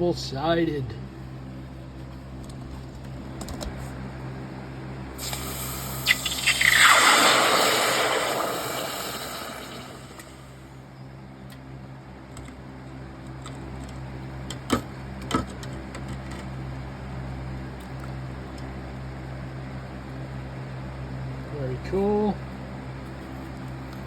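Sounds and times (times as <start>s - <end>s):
steady low hum: 0.0s - 24.0s
hot metal hissing in water: 5.2s - 10.6s.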